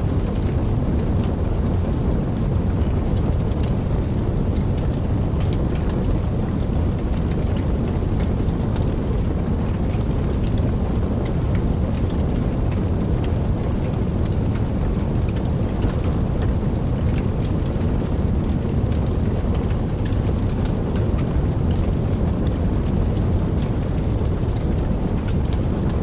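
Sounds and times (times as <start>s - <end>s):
wood fire crackling: 0.0s - 26.0s.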